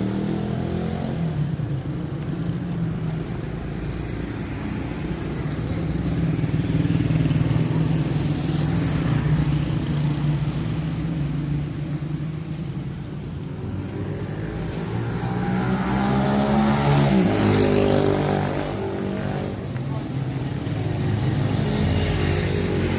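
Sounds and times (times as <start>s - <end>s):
street traffic engines: 0.0s - 22.9s
vehicle passing close by: 13.6s - 22.9s.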